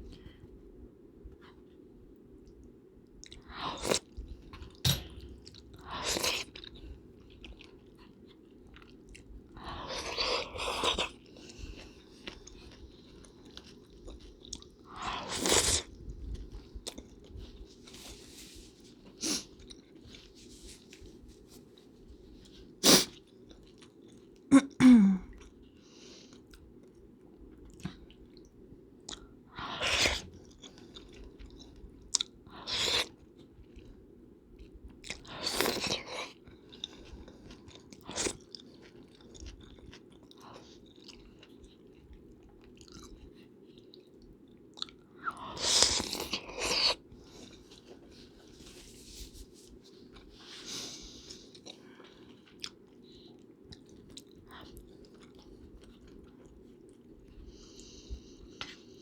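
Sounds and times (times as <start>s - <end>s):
steady low hum: 0.0s - 35.4s
chewing: 2.4s - 18.0s, 25.3s - 34.0s, 34.6s - 48.8s, 49.7s - 59.0s.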